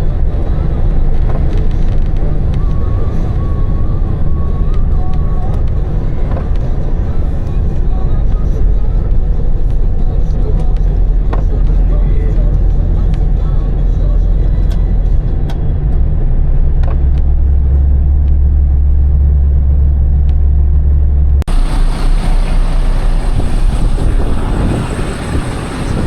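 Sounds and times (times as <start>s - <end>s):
truck engine and road drone: 0.0s - 26.0s
loud hissy noise: 21.5s - 26.0s.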